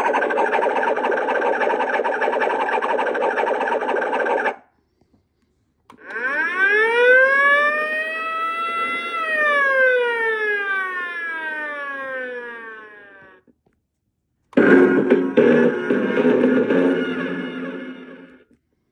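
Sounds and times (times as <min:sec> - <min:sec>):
electronic siren: 0:00.0 - 0:04.6, 0:06.0 - 0:13.5, 0:14.6 - 0:18.5
harsh buzzy noise effect: 0:14.6 - 0:18.4.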